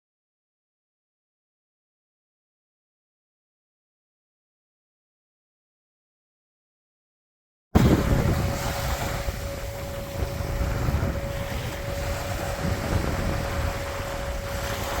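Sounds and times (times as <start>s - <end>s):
steady hum: 7.8s - 15.0s
wind buffeting microphone: 7.8s - 15.0s.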